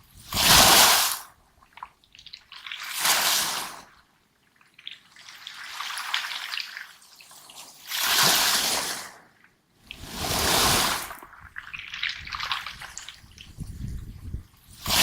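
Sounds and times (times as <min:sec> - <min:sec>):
waves rushing: 0:09.9 - 0:11.3.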